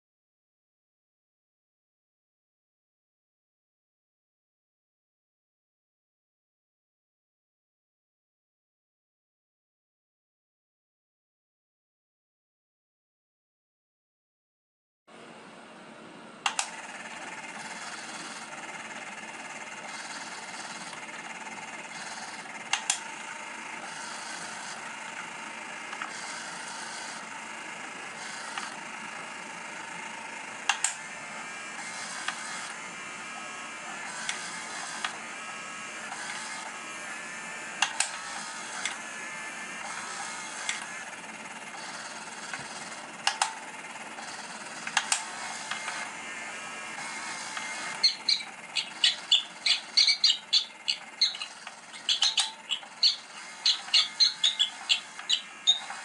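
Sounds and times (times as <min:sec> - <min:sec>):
toy motor whir: 0:16.5 - 0:56.0
high toy squeaks: 0:47.9 - 0:56.0.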